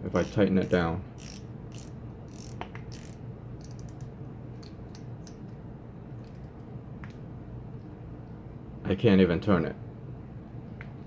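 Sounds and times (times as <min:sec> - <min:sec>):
faint steady hum: 0:00.0 - 0:11.0
fishing reel clicking: 0:00.2 - 0:03.8.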